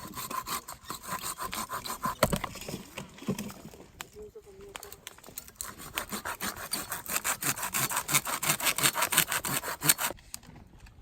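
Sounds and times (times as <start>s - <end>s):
hand saw cutting wood: 0.0s - 2.5s, 5.4s - 10.2s.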